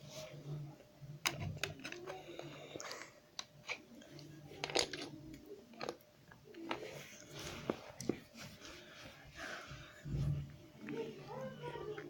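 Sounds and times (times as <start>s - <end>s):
plastic bricks clicking: 4.6s - 5.1s.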